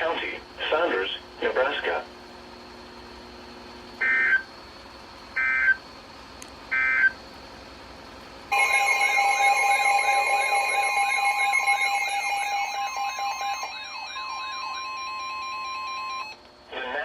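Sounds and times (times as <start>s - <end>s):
loud steady alarm tones: 4.0s - 4.5s, 5.4s - 5.8s, 6.7s - 7.2s, 8.5s - 17.0s
digital data tone bursts: 8.5s - 17.0s.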